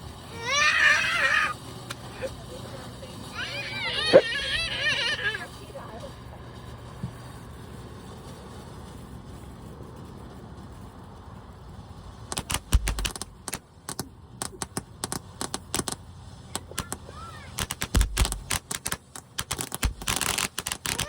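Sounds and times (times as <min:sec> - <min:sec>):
fireworks crackling pops: 0:00.0 - 0:21.0
deep firework thuds: 0:12.3 - 0:16.0, 0:17.6 - 0:21.0.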